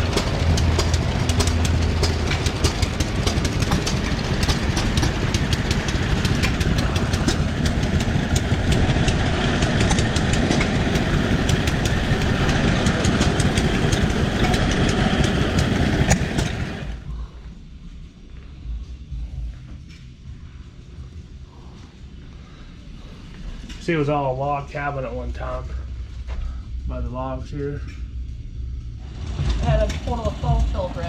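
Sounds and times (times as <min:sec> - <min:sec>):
old machinery clattering: 0:00.0 - 0:17.1.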